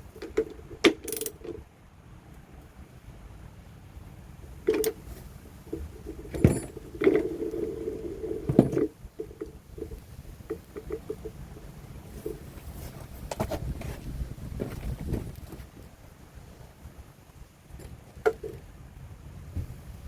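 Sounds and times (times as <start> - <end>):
sharp knocks and clunks: 6.3 - 7.3, 8.5 - 9.4.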